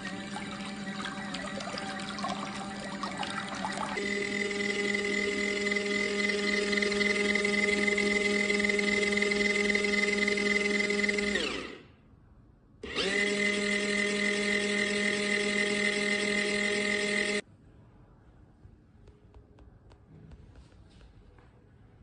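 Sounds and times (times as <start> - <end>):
small electric motor humming: 12.8 - 17.4.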